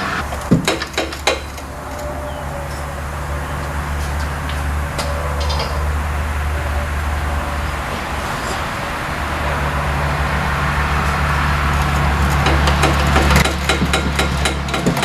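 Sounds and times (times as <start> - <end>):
sharp knocks: 0.0 - 1.8, 11.8 - 15.0
broad rushing noise: 0.0 - 15.0
low machine hum: 0.0 - 15.0.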